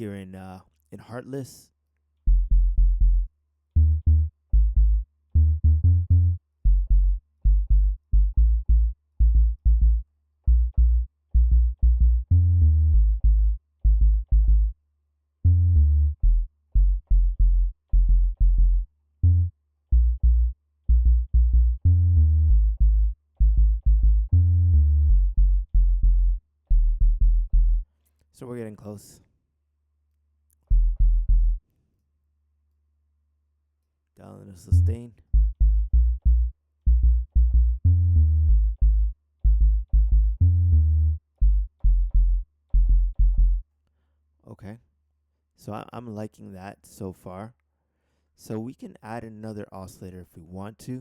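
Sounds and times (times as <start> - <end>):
distorted synthesized bass notes: 34.7 - 41.1.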